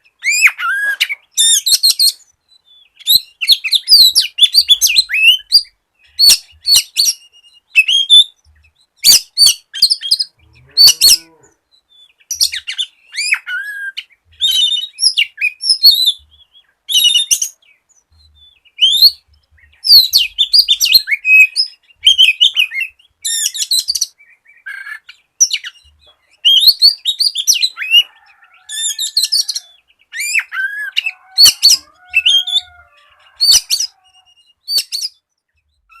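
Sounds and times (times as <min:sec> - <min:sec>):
bird song chirps and whistles: 0:00.0 - 0:36.0.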